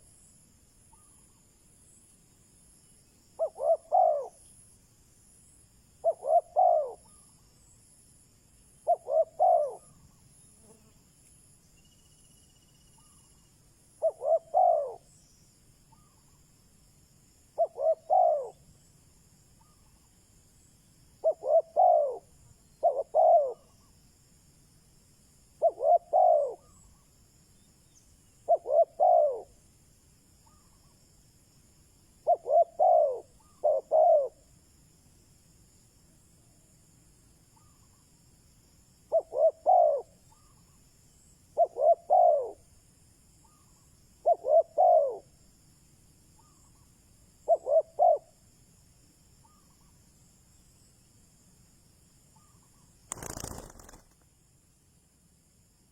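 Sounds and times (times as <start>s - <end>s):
dove cooing: 3.4s - 4.4s, 6.0s - 7.1s, 8.8s - 10.0s, 14.0s - 15.1s, 17.6s - 18.6s, 21.2s - 23.7s, 25.6s - 26.8s, 28.5s - 29.6s, 32.2s - 34.4s, 39.1s - 40.1s, 41.6s - 42.6s, 44.2s - 45.3s, 47.4s - 48.3s, 53.1s - 54.2s.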